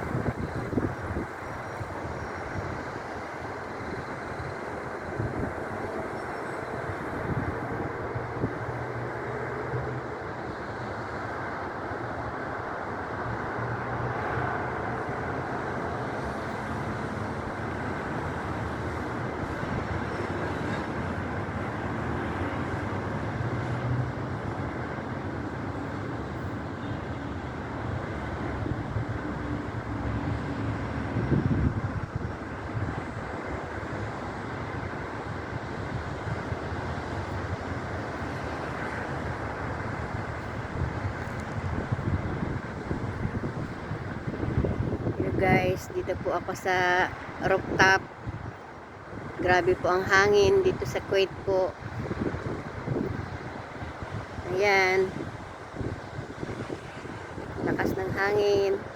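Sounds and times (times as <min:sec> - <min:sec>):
wind buffeting microphone: 0:00.0 - 0:10.9, 0:28.0 - 0:58.9.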